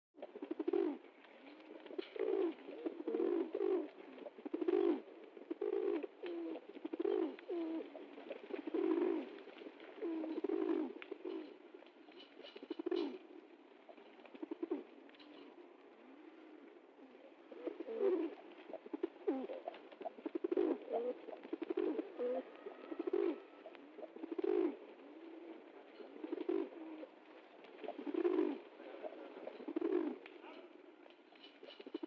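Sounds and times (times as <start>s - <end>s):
pigeons cooing: 0.2s - 32.0s.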